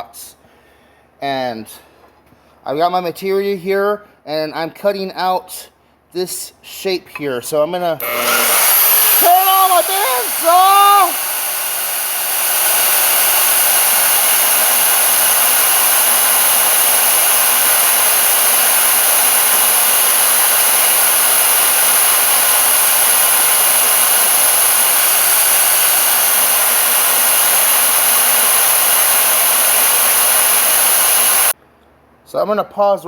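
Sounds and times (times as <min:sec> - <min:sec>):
band saw motor whining: 0:08.0 - 0:31.6.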